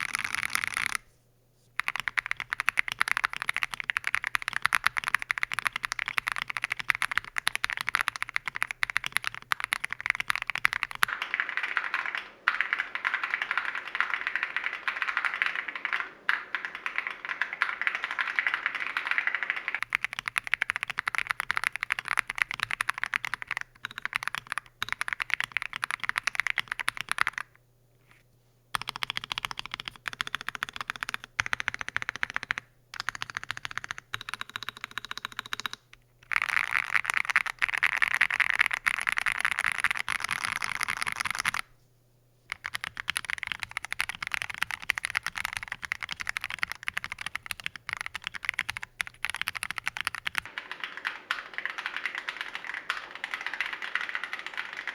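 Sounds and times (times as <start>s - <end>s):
mechanical keyboard typing: 0.0s - 1.0s, 1.8s - 27.6s, 28.7s - 41.7s, 42.5s - 54.9s.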